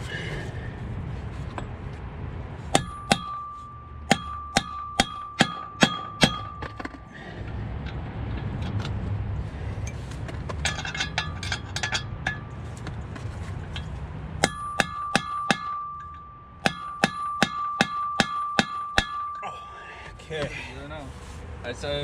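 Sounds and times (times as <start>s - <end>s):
hammer striking metal socket ringing: 2.8s - 7.1s, 14.4s - 19.4s.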